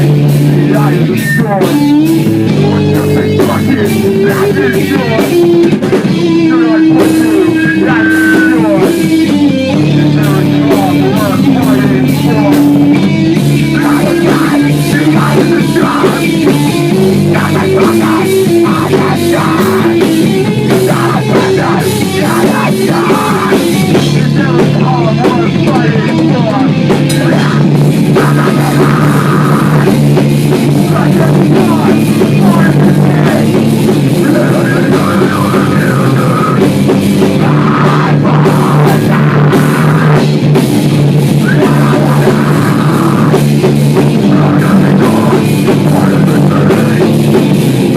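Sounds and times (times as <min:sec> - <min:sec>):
drum kit beating: 0:00.0 - 0:47.9
heavy rock music: 0:00.0 - 0:47.9
low guitar riff: 0:00.0 - 0:47.9.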